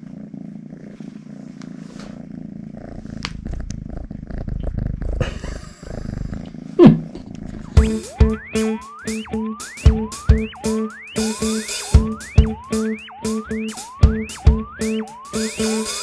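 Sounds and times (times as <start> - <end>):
cat purring: 0.0 - 7.8.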